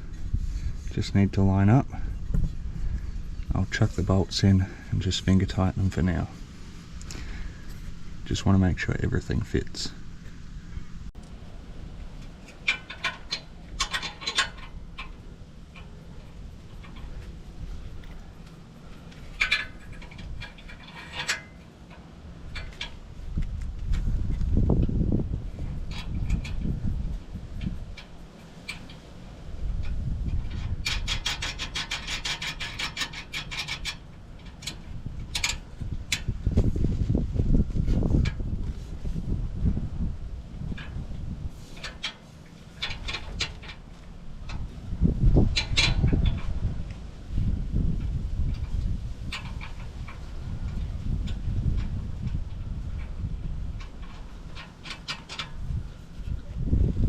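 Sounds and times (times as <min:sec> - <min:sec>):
bolts clicking and tapping: 0:12.2 - 0:23.7, 0:41.7 - 0:44.8, 0:48.5 - 0:56.4
ratchet spanner clicking: 0:29.8 - 0:36.3.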